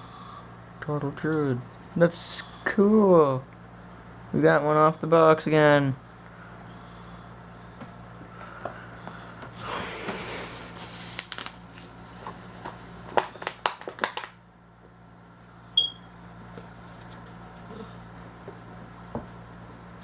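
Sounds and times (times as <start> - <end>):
plastic packaging crinkling and tearing: 10.6 - 14.4.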